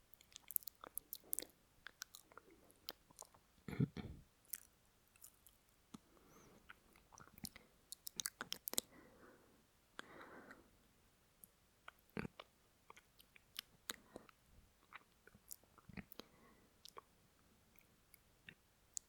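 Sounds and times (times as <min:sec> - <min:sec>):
wet mouth clicks and smacks: 0:00.2 - 0:03.4, 0:06.7 - 0:08.9
breaths: 0:06.0 - 0:06.7, 0:08.8 - 0:10.8, 0:16.2 - 0:16.8.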